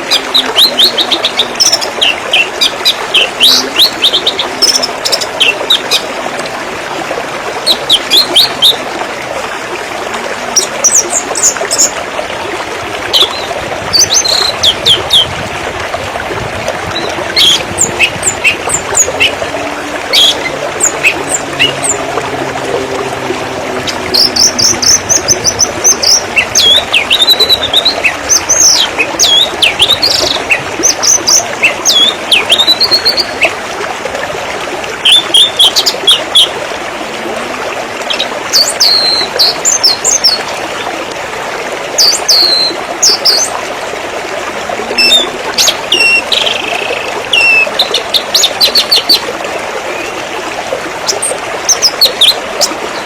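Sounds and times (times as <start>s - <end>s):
river water flowing: 0.0s - 53.0s
songbirds chirping and whistling: 23.9s - 33.5s, 38.1s - 40.4s, 42.0s - 43.5s.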